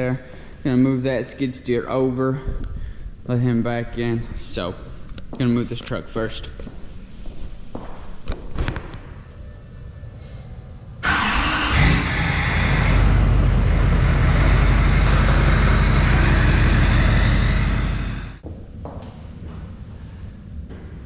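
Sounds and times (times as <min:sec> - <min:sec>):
truck engine starting and idling: 0:11.0 - 0:18.4.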